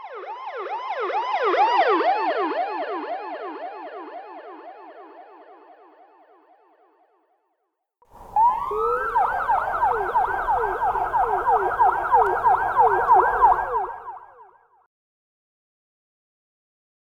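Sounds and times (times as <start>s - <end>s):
siren yelping: 8.2s - 14.3s.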